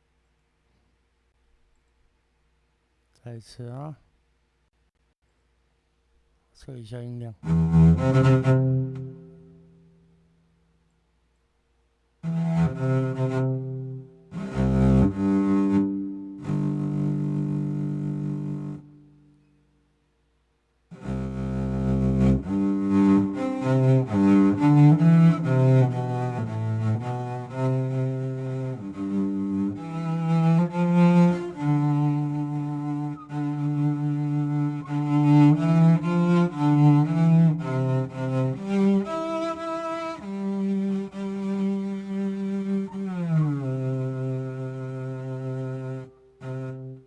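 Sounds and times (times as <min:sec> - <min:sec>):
keyboard cello-like bowed string melody: 0:07.4 - 0:10.1, 0:12.2 - 0:19.3, 0:20.9 - 0:47.0.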